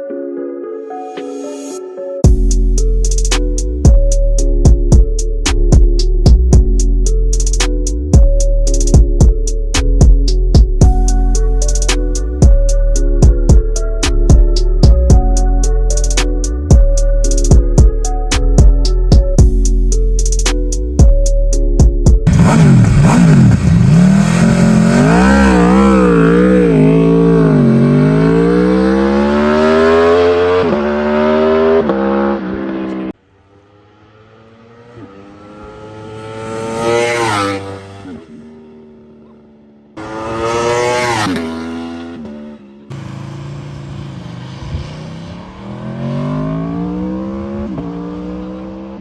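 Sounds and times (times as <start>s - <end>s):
motorcycle engine revving: 22.2s - 39.3s, 39.9s - 49.0s.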